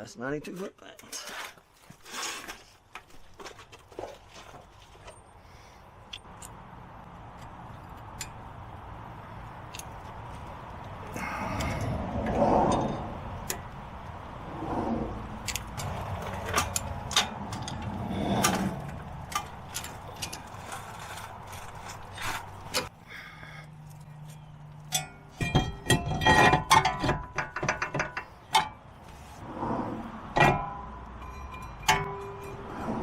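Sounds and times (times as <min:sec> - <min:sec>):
hand tools clinking on metal: 0:24.2 - 0:28.8.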